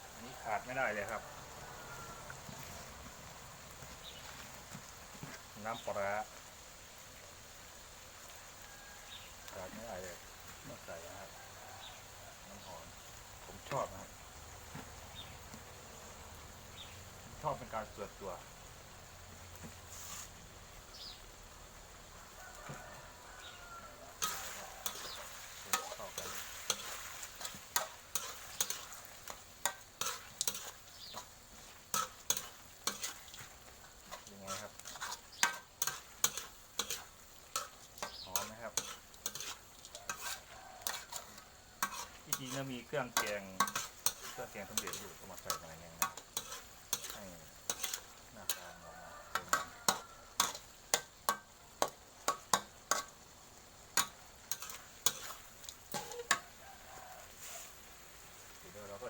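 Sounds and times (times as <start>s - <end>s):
faint sizzle: 0.0s - 59.0s
utensil scraping a pan: 19.6s - 20.4s, 24.1s - 53.2s, 54.0s - 56.5s.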